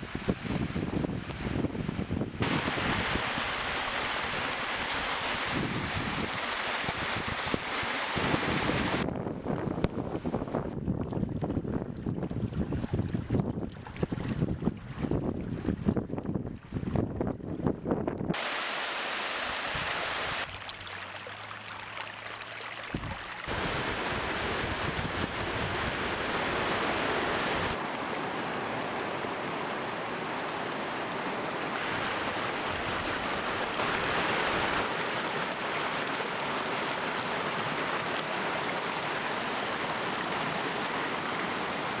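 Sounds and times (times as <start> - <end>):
wind buffeting microphone: 0.0 - 3.6, 5.4 - 18.4, 22.9 - 27.8
rushing floodwater: 0.0 - 9.1, 18.3 - 42.0.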